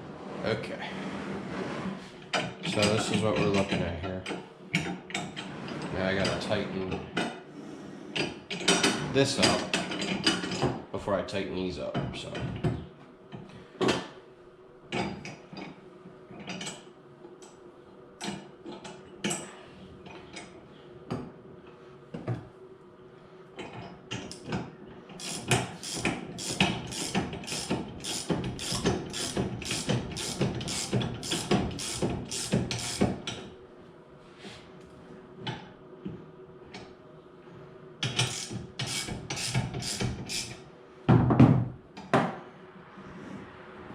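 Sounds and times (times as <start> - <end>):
ratchet wrench clicking: 25.2 - 33.0, 38.2 - 40.5.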